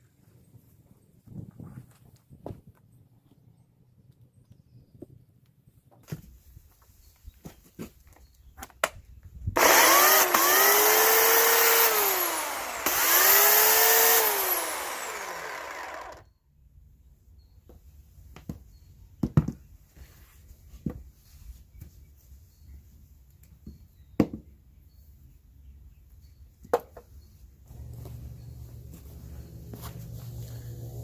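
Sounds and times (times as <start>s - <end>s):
electric chainsaw motor whining: 9.6s - 16.3s, 27.7s - 31.0s.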